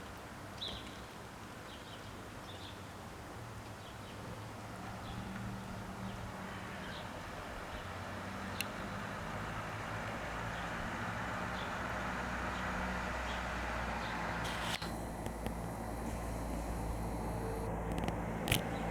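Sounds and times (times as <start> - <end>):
vehicle engine humming: 4.8 - 18.9.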